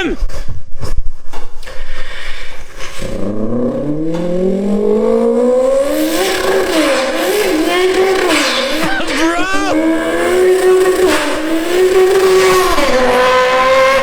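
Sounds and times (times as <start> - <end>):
car engine accelerating: 2.6 - 14.0
engine knocks: 3.2 - 9.1.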